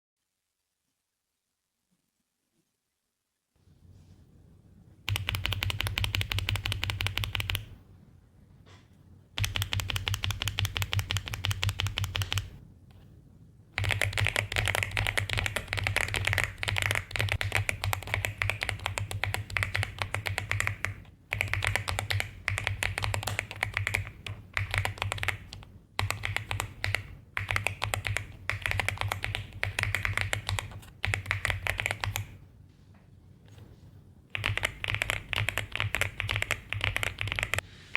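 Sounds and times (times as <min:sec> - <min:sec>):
fast typing on mechanical keyboard: 0:05.1 - 0:07.8, 0:09.4 - 0:12.6, 0:13.8 - 0:32.4, 0:34.3 - 0:37.6.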